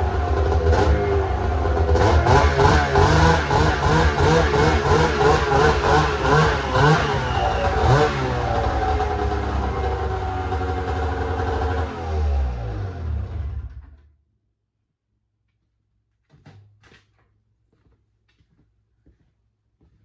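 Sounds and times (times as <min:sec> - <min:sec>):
snowmobile engine revving: 0:00.0 - 0:13.9.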